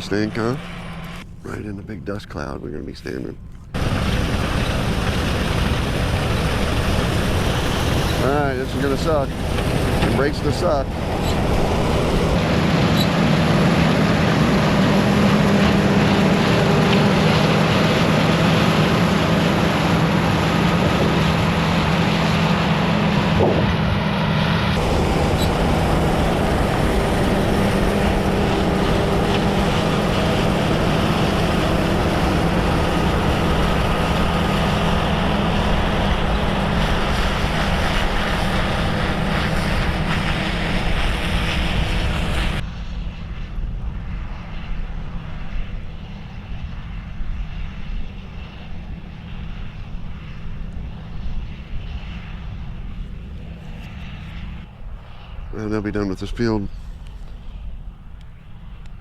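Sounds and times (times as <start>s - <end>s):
thin high whine: 0.0s - 42.6s
threshing machinery rushing: 0.0s - 42.6s
combine harvester engine drone: 0.0s - 59.0s.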